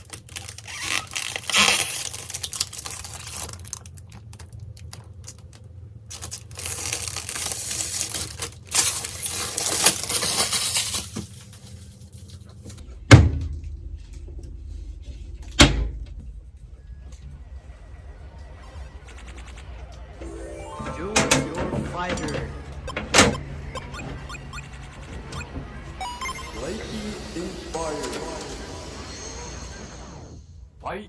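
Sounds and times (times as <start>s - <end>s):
plastic or paper crinkling: 0.0s - 12.4s.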